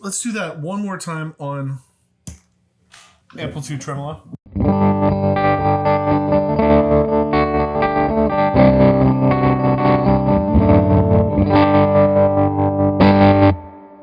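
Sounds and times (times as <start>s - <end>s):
electric guitar chords with tremolo: 4.5s - 14.0s.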